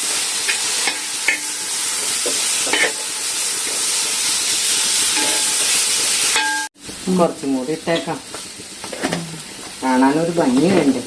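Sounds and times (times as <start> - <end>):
masala frying sizzle: 0.0 - 11.0
spoon scraping pan: 5.0 - 6.7.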